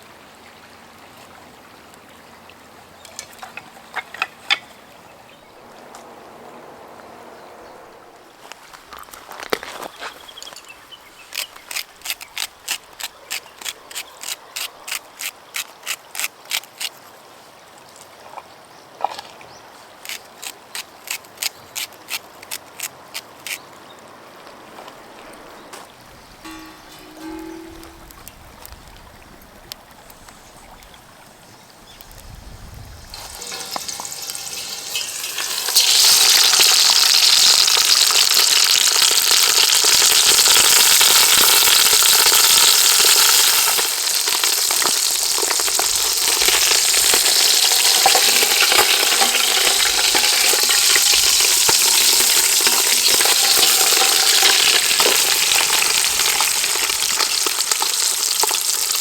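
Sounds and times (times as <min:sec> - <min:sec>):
food sizzling in hot oil: 0:33.1 - 0:59.0.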